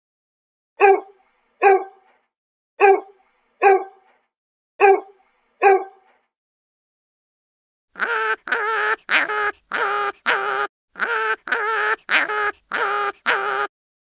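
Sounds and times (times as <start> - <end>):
dog barking: 0.8 - 2.2, 2.8 - 4.2, 4.8 - 6.2.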